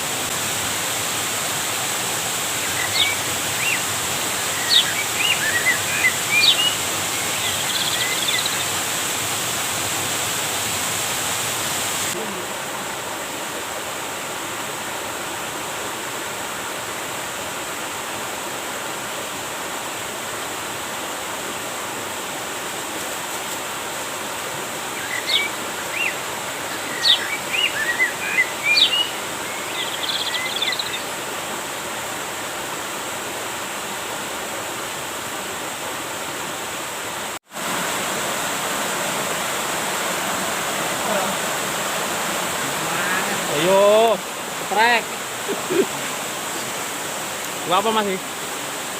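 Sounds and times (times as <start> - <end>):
flowing river water: 0.0 - 48.9
bird chirping: 2.6 - 8.8, 25.0 - 31.1.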